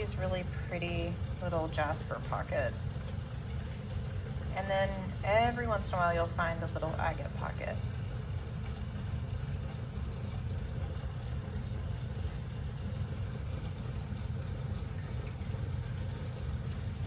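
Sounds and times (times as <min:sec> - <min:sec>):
low machine rumble: 0:00.0 - 0:17.0.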